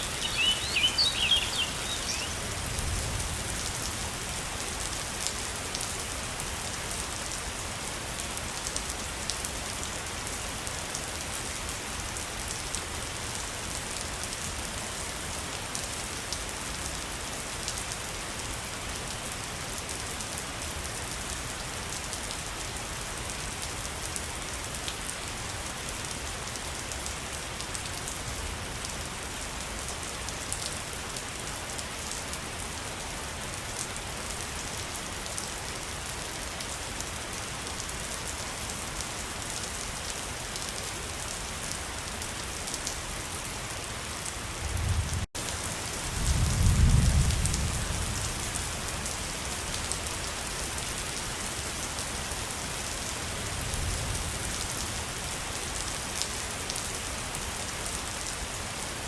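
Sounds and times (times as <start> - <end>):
waterfall rushing: 0.0 - 2.4.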